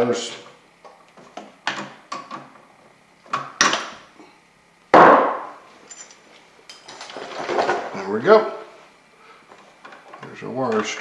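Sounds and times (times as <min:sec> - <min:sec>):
knocks and clatters of drill handling: 0:06.7 - 0:08.0.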